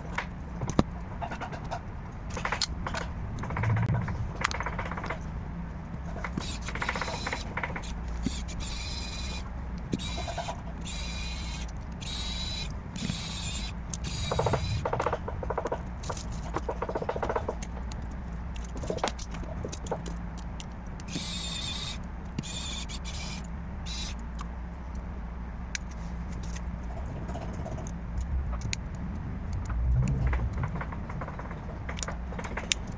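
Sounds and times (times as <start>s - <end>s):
creaking and clicking plastic: 0.0s - 5.3s, 6.0s - 25.1s, 25.8s - 32.9s
low hum: 0.0s - 16.9s, 21.1s - 32.9s.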